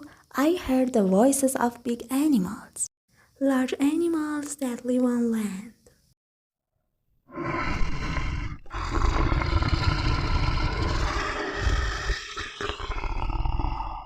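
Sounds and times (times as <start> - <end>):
large animal roaring: 7.3 - 14.0.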